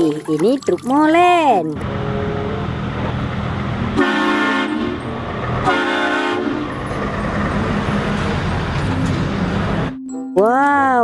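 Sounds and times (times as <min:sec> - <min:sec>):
low engine rumble: 0:00.4 - 0:10.0
vehicle horn blasts: 0:04.0 - 0:05.0, 0:05.6 - 0:06.7.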